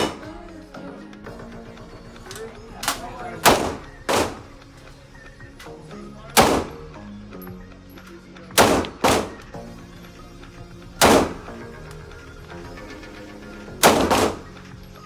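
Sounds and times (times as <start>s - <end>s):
gunshots: 0.0s - 0.4s, 2.8s - 4.7s, 6.4s - 7.0s, 8.6s - 9.6s, 11.0s - 11.7s, 13.8s - 14.6s
background music: 0.0s - 15.0s.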